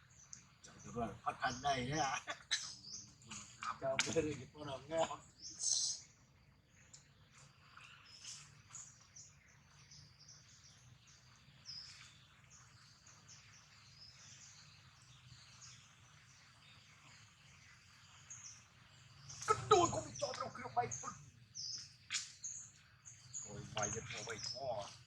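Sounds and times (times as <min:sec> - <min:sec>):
birds chirping: 0:00.0 - 0:25.0.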